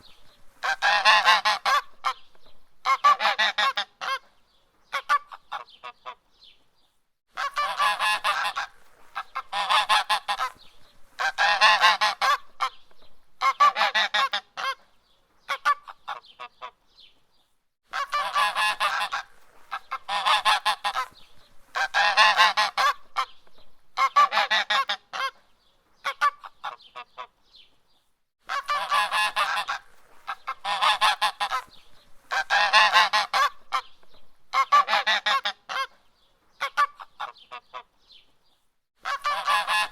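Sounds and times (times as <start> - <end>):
goose honking: 0.6 - 2.2, 7.4 - 10.6, 11.2 - 12.7, 17.9 - 23.3, 28.5 - 33.9, 34.5 - 35.9, 39.0 - 39.9.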